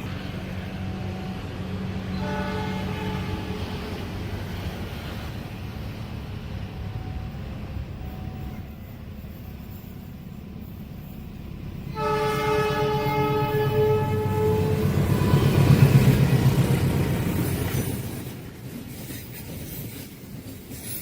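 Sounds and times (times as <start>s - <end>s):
train rumbling: 0.0s - 21.0s
locomotive horn blast: 0.9s - 4.0s, 11.9s - 15.8s.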